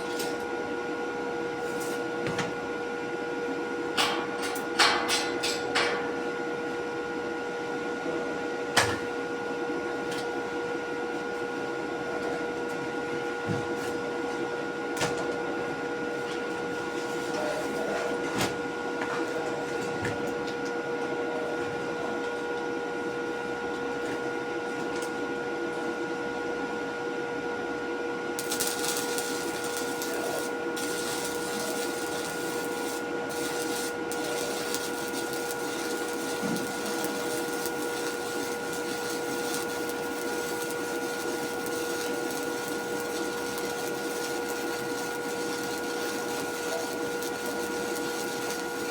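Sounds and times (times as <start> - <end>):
machine humming: 28.4 - 48.9.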